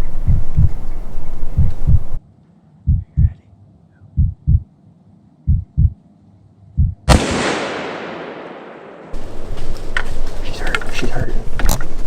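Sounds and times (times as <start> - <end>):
heartbeat thumps: 0.0 - 0.9, 1.5 - 2.2, 2.8 - 3.4, 4.1 - 4.7, 5.5 - 6.0, 6.8 - 7.1
rifle shot with echo: 7.1 - 9.3.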